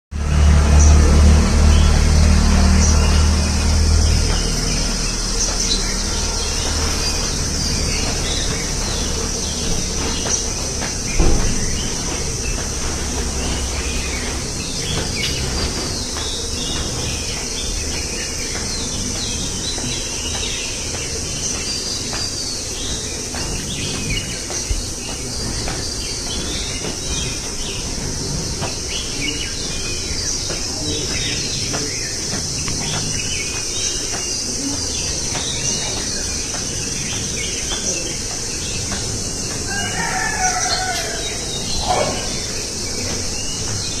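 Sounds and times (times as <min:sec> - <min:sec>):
small birds chirping: 0:00.2 - 0:44.0
rooster crowing: 0:39.6 - 0:42.6.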